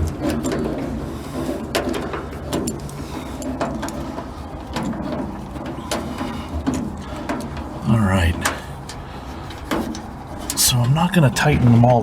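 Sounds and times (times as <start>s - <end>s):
low steady hum: 7.8s - 12.0s.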